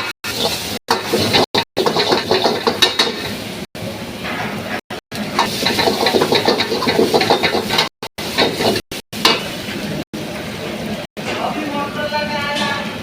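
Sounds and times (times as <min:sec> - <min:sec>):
utensil scraping in a pan: 0:00.0 - 0:03.5, 0:05.4 - 0:08.8
food sizzling: 0:00.0 - 0:04.2, 0:05.0 - 0:11.1.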